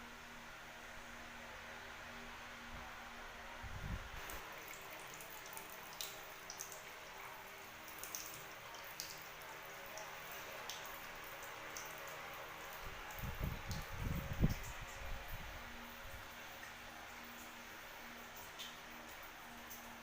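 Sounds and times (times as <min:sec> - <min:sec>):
water drips and splashes: 0:04.1 - 0:20.0.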